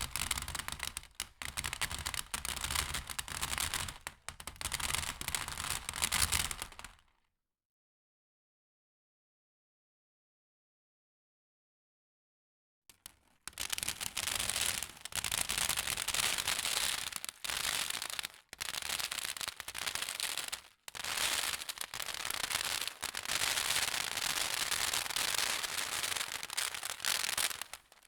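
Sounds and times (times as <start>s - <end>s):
crackling rain patter: 16.1s - 28.0s.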